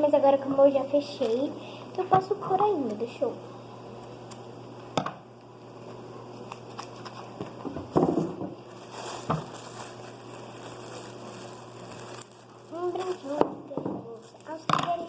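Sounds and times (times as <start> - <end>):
paper crinkling and rustling: 5.8 - 7.6, 8.7 - 13.4, 14.1 - 15.0.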